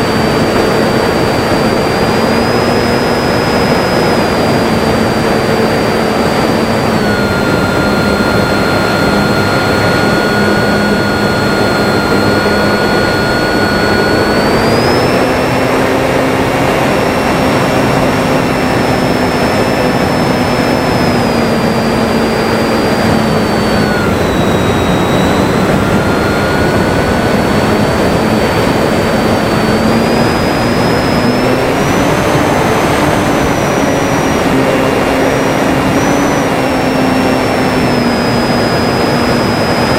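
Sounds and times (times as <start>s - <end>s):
heavy wind noise: 0.0s - 39.9s
model plane motor whining: 0.0s - 39.9s.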